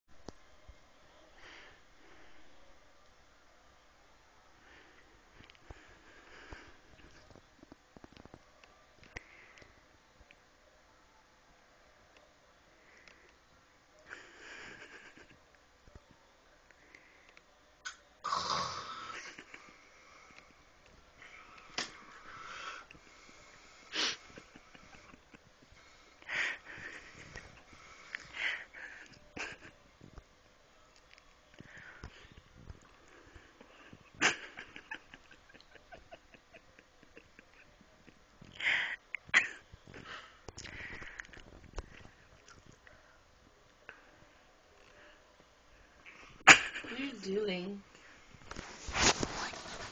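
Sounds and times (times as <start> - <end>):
person snoring: 18.2 - 19.4.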